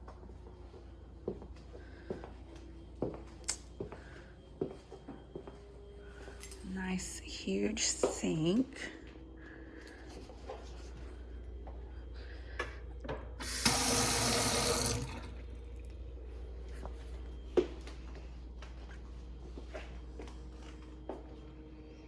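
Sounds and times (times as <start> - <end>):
faucet water running into sink: 13.4 - 15.9.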